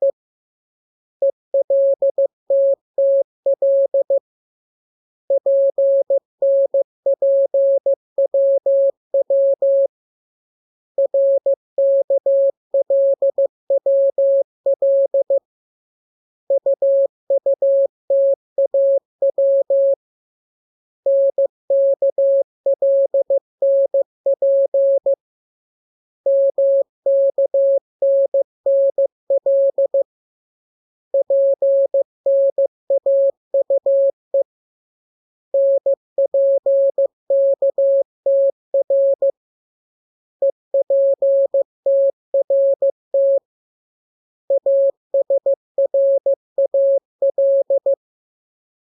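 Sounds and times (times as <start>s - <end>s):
morse code tone: 35.6s - 39.3s.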